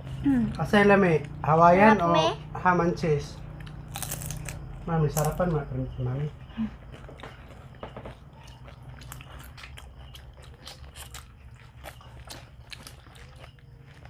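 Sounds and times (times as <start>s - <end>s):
steady low hum: 0.0s - 14.0s
chewing crunchy food: 3.4s - 5.5s, 6.3s - 14.0s.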